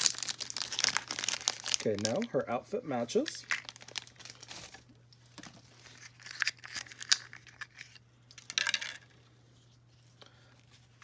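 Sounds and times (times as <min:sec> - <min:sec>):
packaging rustling: 0:00.0 - 0:02.4, 0:03.2 - 0:08.9.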